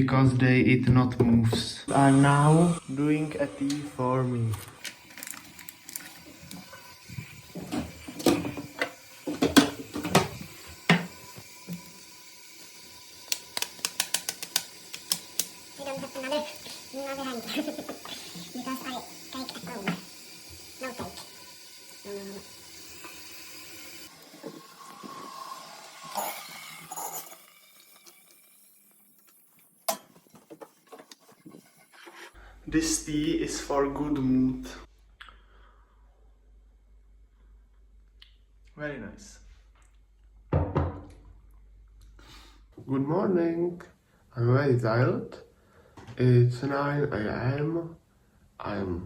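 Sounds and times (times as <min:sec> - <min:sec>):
hiss: 0:05.9 - 0:27.3
cups and kitchenware clattering: 0:07.2 - 0:11.1.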